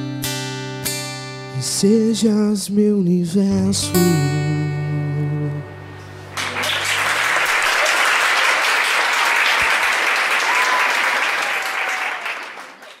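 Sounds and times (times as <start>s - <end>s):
guitar chord ringing: 3.6s - 6.6s
audience applauding: 6.3s - 13.0s.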